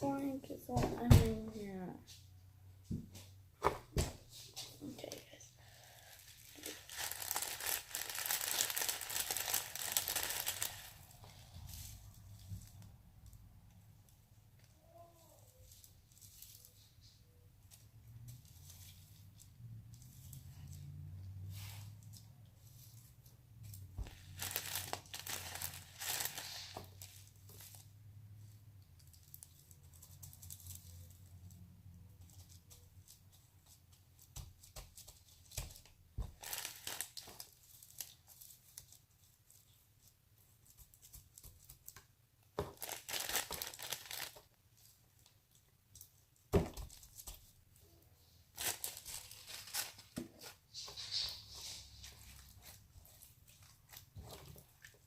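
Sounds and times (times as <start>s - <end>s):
slime crackling and tearing: 6.2s - 11.2s, 24.0s - 27.8s, 36.3s - 38.8s, 42.7s - 44.4s.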